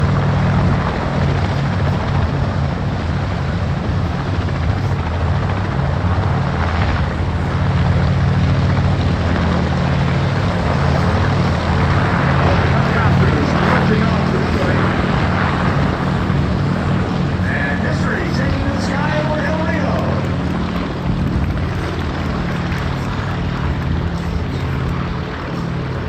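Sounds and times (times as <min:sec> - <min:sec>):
helicopter engine running: 0:00.0 - 0:26.0
helicopter rotor chopping: 0:00.0 - 0:26.0.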